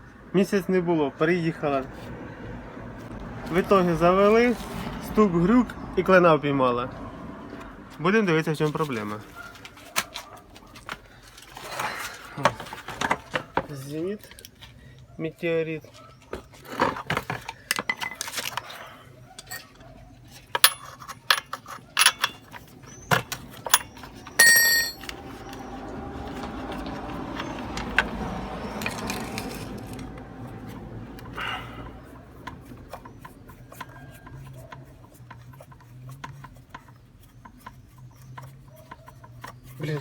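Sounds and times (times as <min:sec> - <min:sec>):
rubbing and rustling handling: 0:08.0 - 0:14.9
metal tools clinking on workbench: 0:19.4 - 0:19.8, 0:20.5 - 0:25.2
bright metallic ring: 0:24.4 - 0:25.0.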